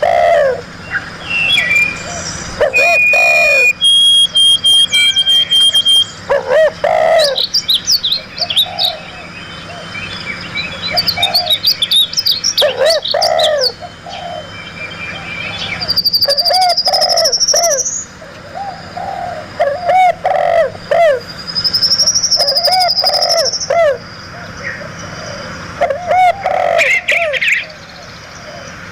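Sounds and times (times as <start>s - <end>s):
long high bird trill: 0.0s - 28.1s
low arching bird calls: 0.0s - 28.9s
short high bird chirps: 1.2s - 6.2s.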